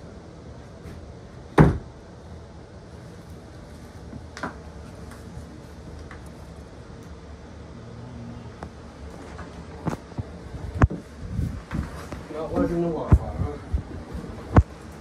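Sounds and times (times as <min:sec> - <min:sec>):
low steady hum: 0:00.0 - 0:15.0
loud thump: 0:01.6 - 0:01.9.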